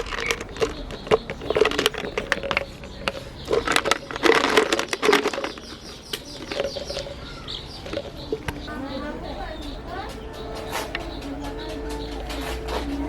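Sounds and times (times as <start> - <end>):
candies cracking in a meat grinder: 0.0 - 8.2.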